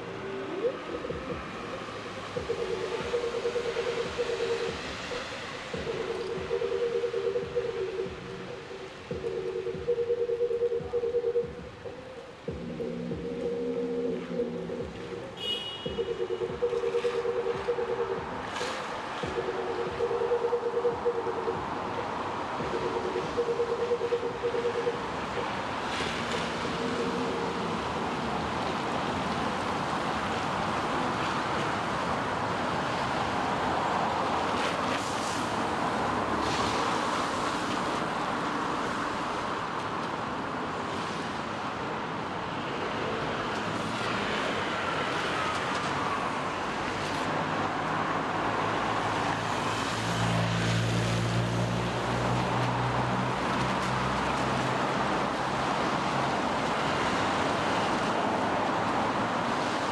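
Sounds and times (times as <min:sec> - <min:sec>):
rain falling: 0:00.0 - 0:09.9, 0:25.0 - 0:59.9
tyres hissing on wet road: 0:03.6 - 0:05.9, 0:25.1 - 0:59.9.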